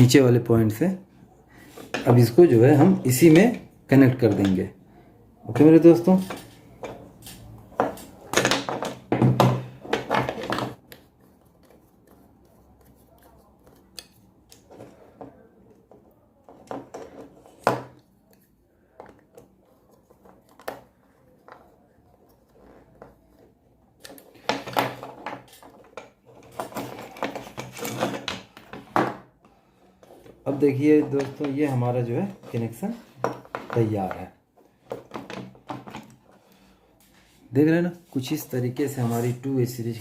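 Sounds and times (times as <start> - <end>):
clicks scrapes and rustles of wiring: 15.7 - 28.7.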